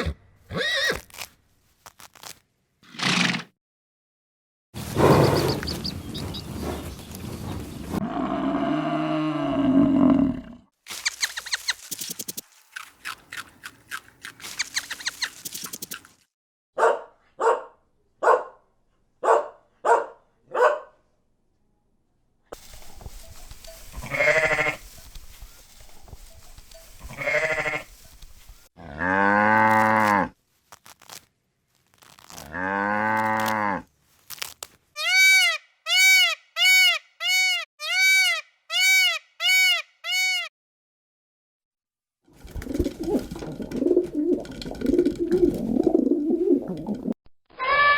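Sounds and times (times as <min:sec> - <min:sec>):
sheep or goats bleating: 0:24.0 - 0:24.8, 0:27.0 - 0:27.9.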